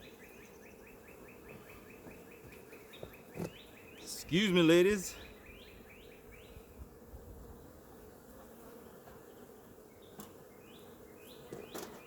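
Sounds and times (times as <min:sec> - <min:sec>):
bird chirping: 0:00.0 - 0:06.7
honeybees buzzing: 0:00.0 - 0:12.0.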